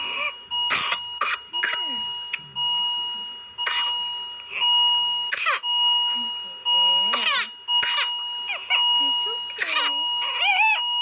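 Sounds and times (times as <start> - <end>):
harsh coughing: 0.7 - 2.0, 3.6 - 4.0, 5.3 - 5.6, 7.1 - 8.8, 9.6 - 10.0
strained crying: 9.5 - 10.9.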